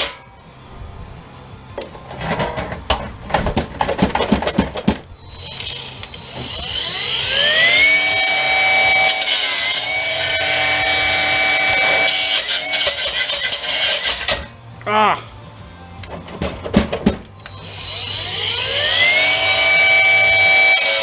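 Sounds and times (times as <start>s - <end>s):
metal clattering and knocks: 1.8s - 5.1s, 16.0s - 17.5s
electric power tool whine: 5.3s - 14.5s, 17.5s - 21.0s.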